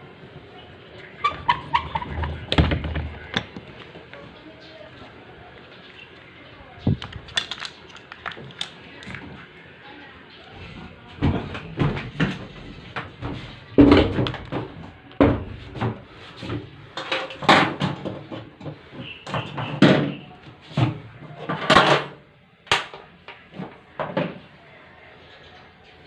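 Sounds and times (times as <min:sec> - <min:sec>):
objects knocking and clattering: 0:01.3 - 0:04.2, 0:06.8 - 0:09.4, 0:11.2 - 0:24.4.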